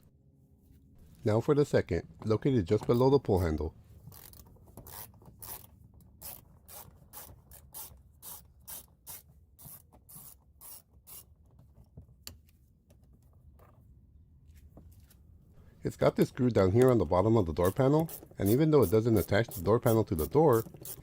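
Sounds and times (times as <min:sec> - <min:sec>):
socket ratchet strokes: 0:02.6 - 0:11.4, 0:17.5 - 0:21.0.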